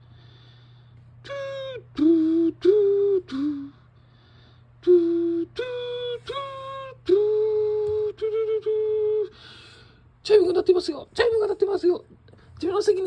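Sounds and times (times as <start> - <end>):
person singing wordless notes: 1.3 - 3.8, 4.8 - 9.4.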